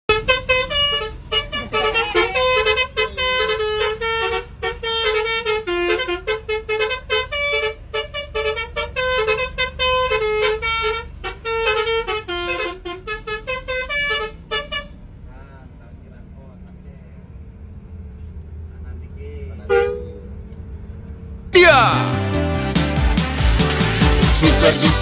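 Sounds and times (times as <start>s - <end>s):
multi-tone horn melody: 21.6s - 23.2s, 23.8s - 25.0s.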